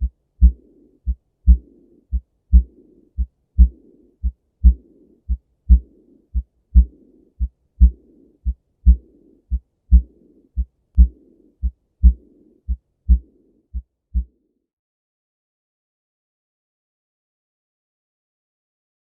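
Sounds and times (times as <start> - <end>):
heart murmur: 0.0 - 13.3
heart thumps: 0.0 - 13.3.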